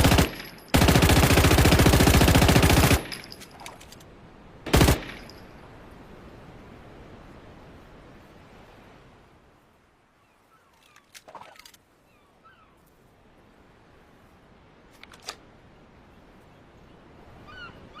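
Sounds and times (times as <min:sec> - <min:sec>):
faint bird chirps: 0:10.1 - 0:11.2, 0:12.0 - 0:13.0, 0:16.0 - 0:18.0.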